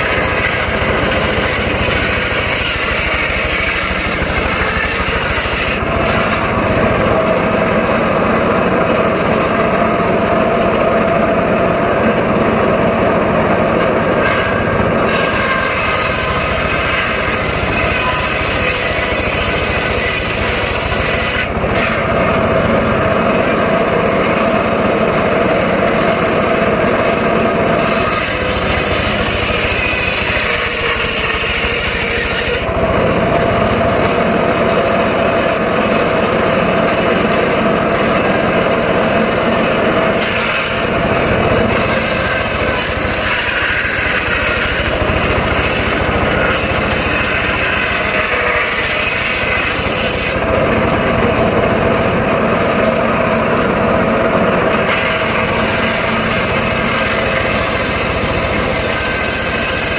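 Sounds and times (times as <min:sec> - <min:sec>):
circular saw running: 0:00.0 - 0:59.9
harsh sawing through wood: 0:00.0 - 0:59.9.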